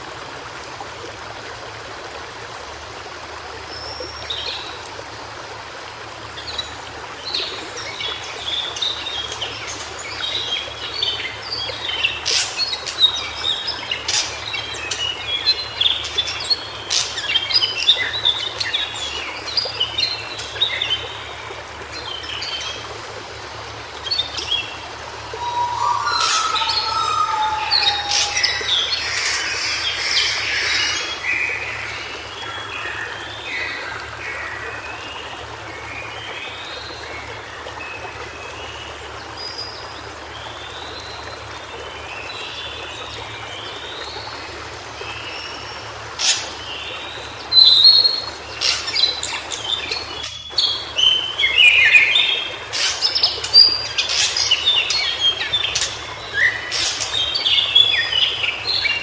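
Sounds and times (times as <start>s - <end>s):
bird chirping song: 24.0s - 33.0s.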